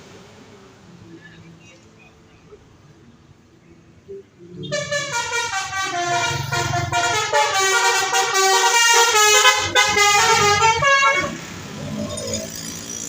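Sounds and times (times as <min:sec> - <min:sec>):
bus engine running: 0:00.0 - 0:13.0
tuned air horns melody: 0:04.6 - 0:11.5.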